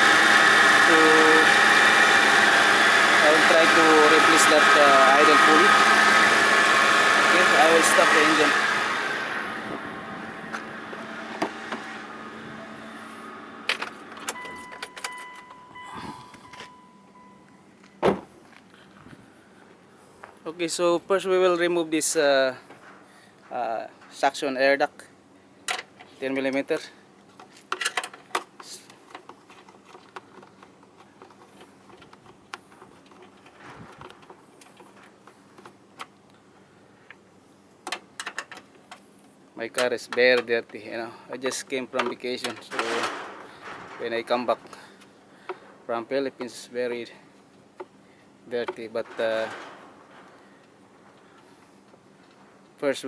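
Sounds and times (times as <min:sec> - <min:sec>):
car engine running: 0:00.0 - 0:16.6
high electronic tone: 0:09.4 - 0:17.6.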